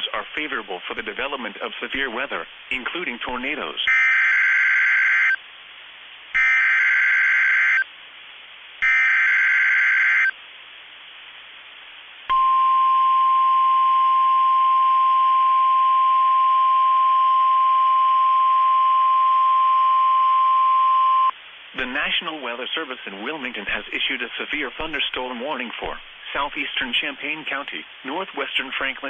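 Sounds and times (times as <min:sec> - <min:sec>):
radio static hiss: 0:00.0 - 0:04.0, 0:21.3 - 0:29.0
steady single-tone warning alarm: 0:03.9 - 0:05.4, 0:06.4 - 0:07.9, 0:08.8 - 0:10.4.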